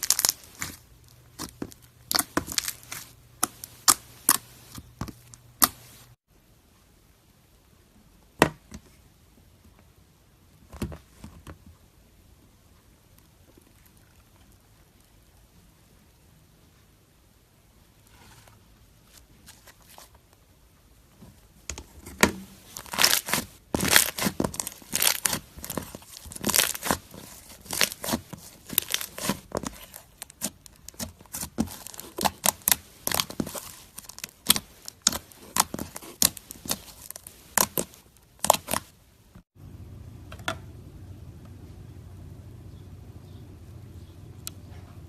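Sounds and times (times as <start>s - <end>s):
low steady hum: 19.9s - 45.0s.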